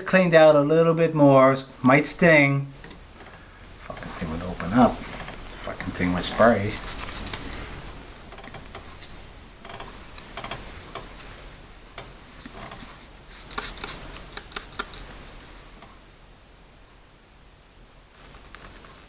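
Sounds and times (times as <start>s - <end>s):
first-aid supplies clicking and scratching: 6.7s - 7.6s, 12.4s - 15.1s.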